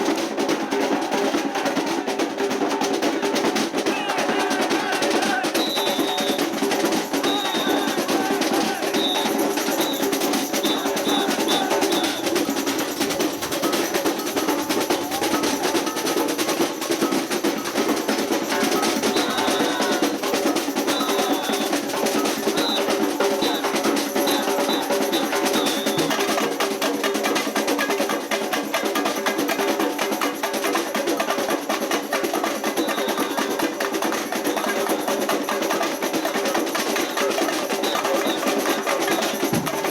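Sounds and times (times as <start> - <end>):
samba drum groove: 0.0 - 39.9
whistle blasts: 4.3 - 13.1, 18.7 - 26.2, 32.8 - 33.6, 36.9 - 39.8.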